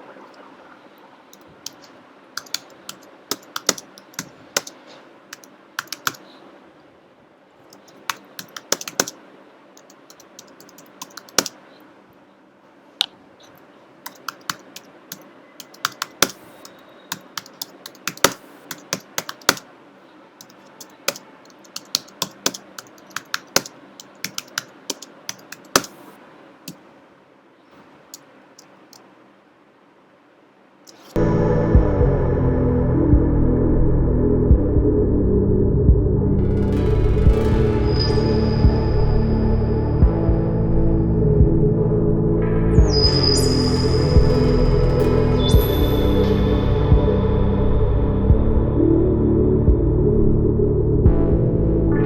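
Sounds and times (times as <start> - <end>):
typing on computer keyboard: 1.3 - 6.2, 7.7 - 9.2, 9.8 - 11.6, 14.0 - 19.7, 20.4 - 26.0.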